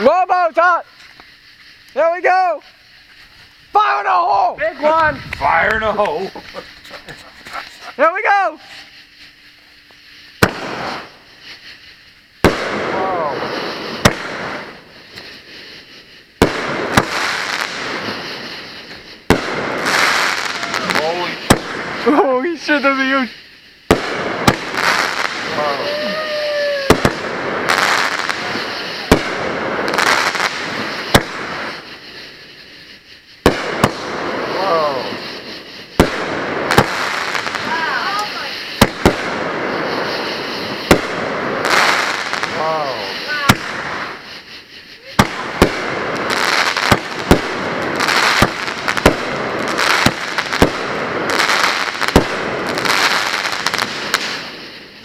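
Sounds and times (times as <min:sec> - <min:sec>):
firework bangs: 0:00.0 - 0:55.0
firework crackling: 0:00.0 - 0:55.0.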